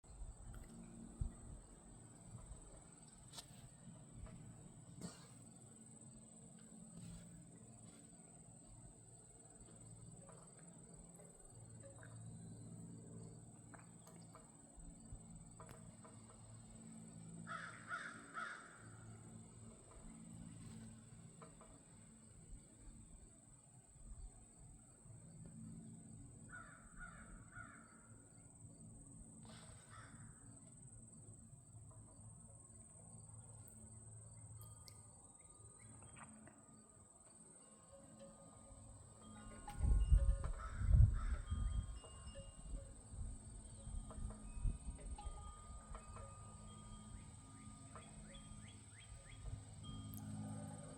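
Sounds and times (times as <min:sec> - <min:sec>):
low hum: 0:00.0 - 0:17.5, 0:18.2 - 0:50.9
harsh caw-like bird calls: 0:17.4 - 0:19.2, 0:26.5 - 0:28.2, 0:29.8 - 0:30.5, 0:40.6 - 0:41.5
high-pitched insect trill: 0:24.1 - 0:50.9
faint ticks: 0:34.7 - 0:35.1.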